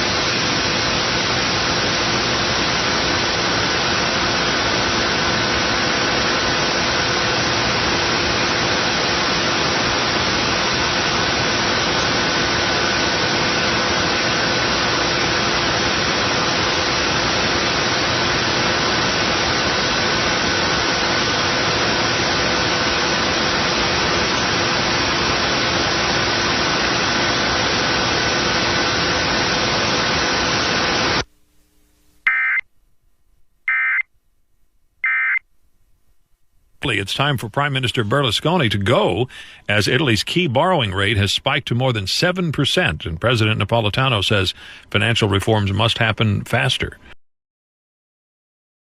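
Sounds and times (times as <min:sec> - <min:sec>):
radio static hiss: 0:00.0 - 0:32.6, 0:36.8 - 0:47.2.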